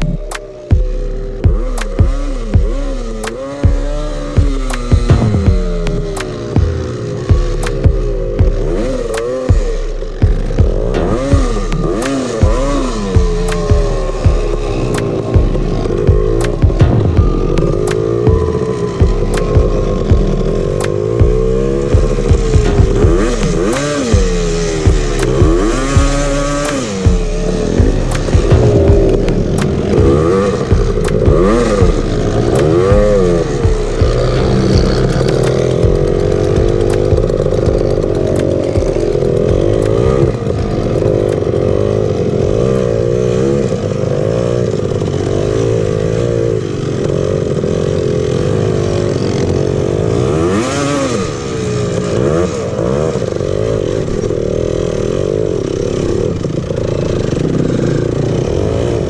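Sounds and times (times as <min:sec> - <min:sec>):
two-stroke engine revving: 0:00.0 - 0:59.0.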